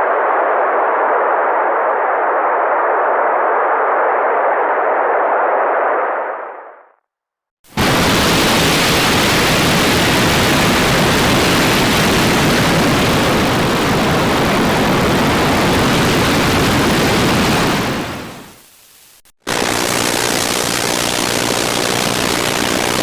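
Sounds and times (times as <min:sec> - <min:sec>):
loud static hiss: 0:07.7 - 0:23.0.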